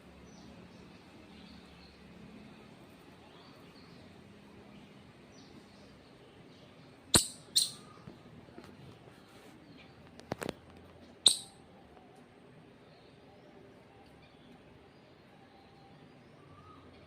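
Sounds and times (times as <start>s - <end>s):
squirrel chirping: 7.1s - 8.1s, 11.2s - 11.7s.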